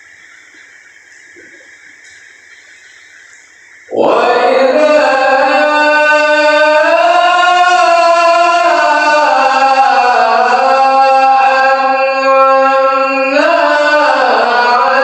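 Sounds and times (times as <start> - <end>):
man reciting melodically: 3.9 - 15.0.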